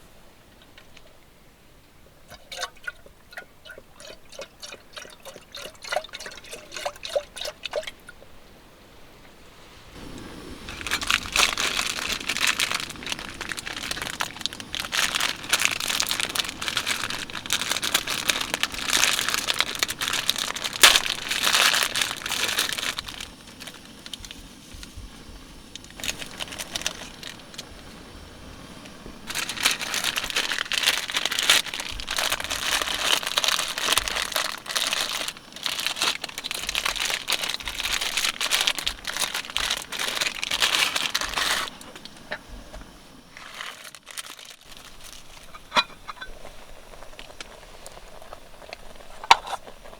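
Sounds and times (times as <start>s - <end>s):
close crinkling and rustling: 10.0s - 49.9s.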